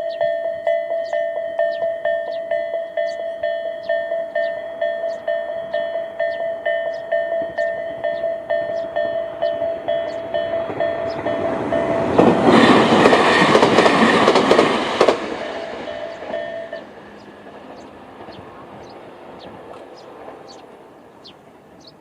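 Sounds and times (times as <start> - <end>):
level crossing bell ringing: 0.0 - 12.4, 15.5 - 17.2
train wheels clicking over rail joints: 0.1 - 22.0.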